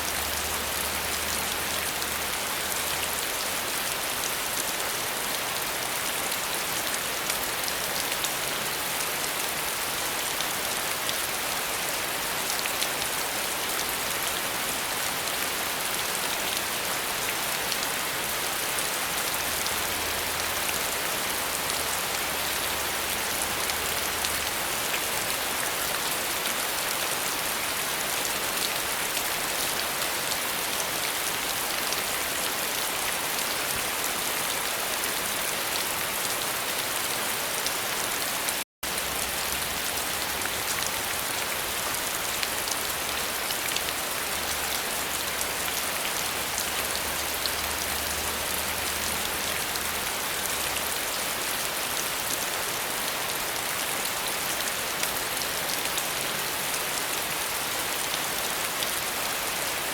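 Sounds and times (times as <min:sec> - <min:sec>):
steady rainfall: 0:00.0 - 0:59.9.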